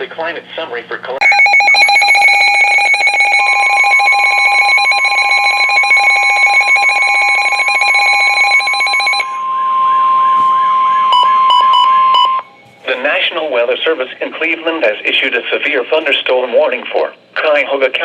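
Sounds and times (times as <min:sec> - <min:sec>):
pulsing electronic alarm: 0:01.2 - 0:12.9
steady warning tone: 0:01.2 - 0:15.9.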